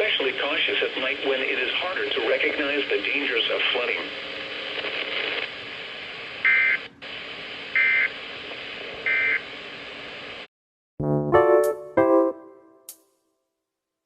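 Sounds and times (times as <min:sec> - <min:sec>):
keyboard chords: 0:11.0 - 0:13.0.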